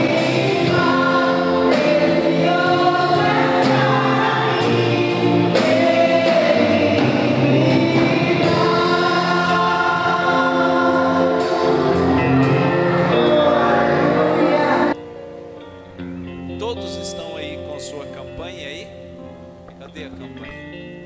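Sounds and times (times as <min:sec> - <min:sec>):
choir singing with band: 0:00.0 - 0:15.0.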